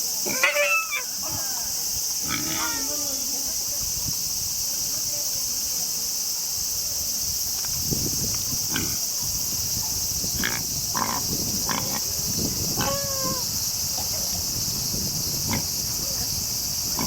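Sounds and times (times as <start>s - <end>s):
high insect chorus: 0.0s - 17.0s
short animal calls: 12.8s - 13.5s.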